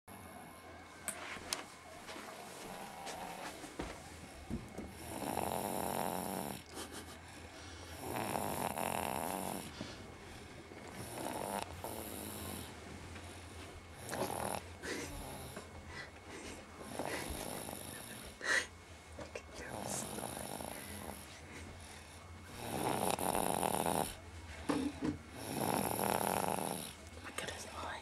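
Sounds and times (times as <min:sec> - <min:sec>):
baby snoring: 0:02.6 - 0:03.6, 0:04.9 - 0:06.7, 0:07.8 - 0:09.9, 0:10.8 - 0:12.8, 0:14.0 - 0:16.1, 0:16.8 - 0:18.6, 0:19.7 - 0:21.4, 0:22.5 - 0:24.2, 0:25.3 - 0:27.0.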